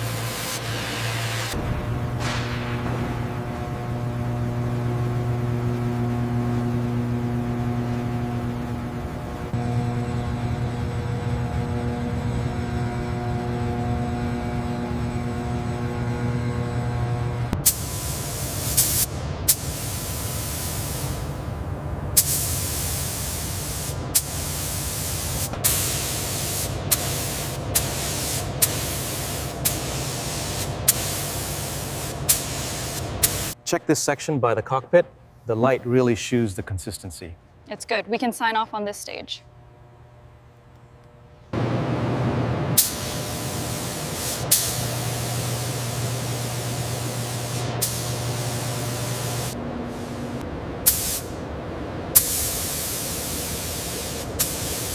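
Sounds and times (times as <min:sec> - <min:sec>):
low steady hum: 0:01.5 - 0:54.4
spray gun hissing: 0:17.6 - 0:21.3, 0:22.2 - 0:33.6, 0:42.8 - 0:51.4, 0:52.2 - 0:54.9.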